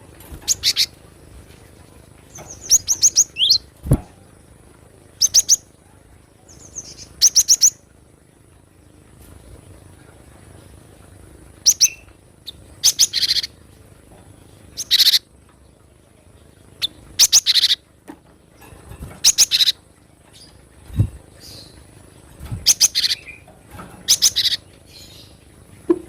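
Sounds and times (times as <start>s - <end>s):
bird chirping high-pitched: 0.5s - 0.9s, 2.3s - 3.7s, 5.2s - 5.7s, 6.5s - 7.8s, 11.6s - 13.6s, 14.8s - 15.2s, 16.8s - 17.8s, 19.2s - 20.5s, 22.6s - 23.4s, 24.1s - 25.4s.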